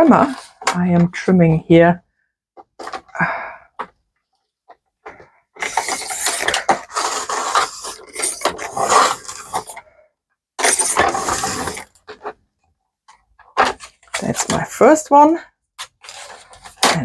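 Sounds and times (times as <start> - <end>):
paper trimmer cutting paper: 5.6 - 9.8, 10.6 - 12.0.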